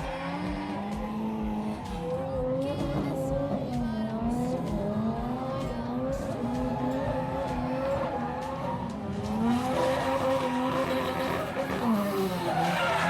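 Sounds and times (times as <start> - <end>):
car engine at high revs: 0.0 - 13.0
tyres squealing on tarmac: 6.4 - 13.0.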